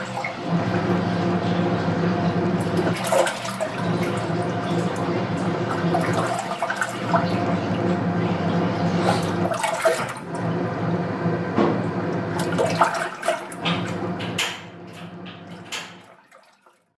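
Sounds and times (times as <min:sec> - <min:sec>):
washing machine motor hum: 0:00.0 - 0:16.9
water sloshing: 0:00.0 - 0:16.9
clicks and knocks: 0:13.6 - 0:16.1.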